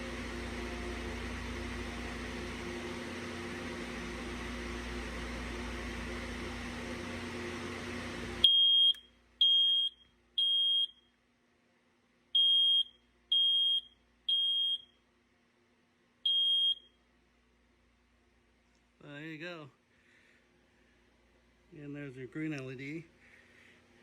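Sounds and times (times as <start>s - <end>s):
smoke alarm beeping: 8.4s - 11.1s, 12.4s - 15.0s, 16.2s - 17.0s.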